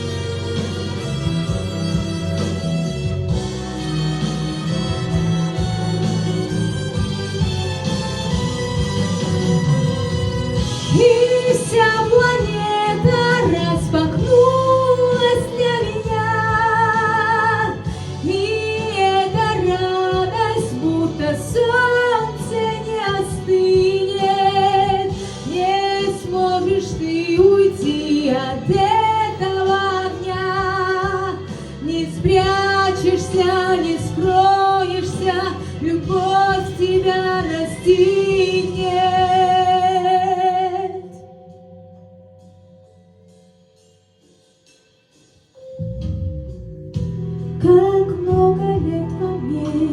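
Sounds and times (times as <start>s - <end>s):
instrumental accompaniment: 0.0s - 49.9s
woman singing with vibrato: 10.8s - 41.3s, 47.6s - 49.9s.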